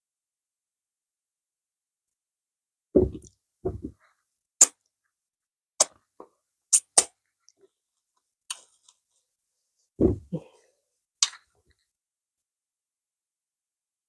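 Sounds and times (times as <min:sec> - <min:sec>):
low mouth noises: 0:10.0 - 0:10.6.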